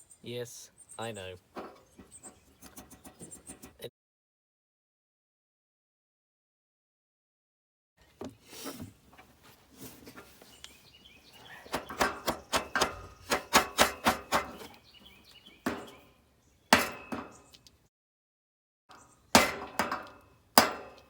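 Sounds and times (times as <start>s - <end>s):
hammer striking metal: 11.7s - 14.6s, 16.8s - 17.4s, 19.4s - 21.0s.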